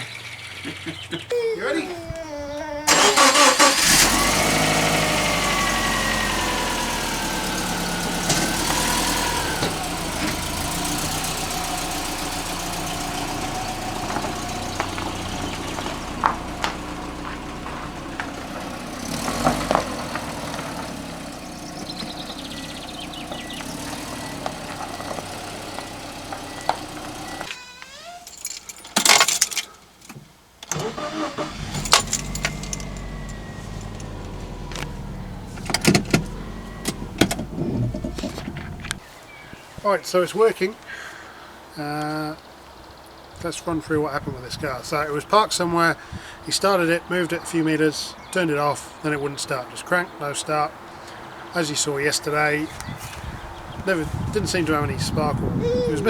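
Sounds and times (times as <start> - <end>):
car engine starting and idling: 2.2 - 28.8, 30.6 - 39.1, 52.2 - 56.0.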